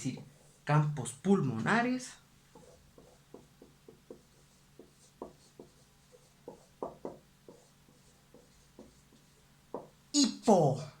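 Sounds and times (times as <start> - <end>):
pen writing strokes: 2.5 - 10.0.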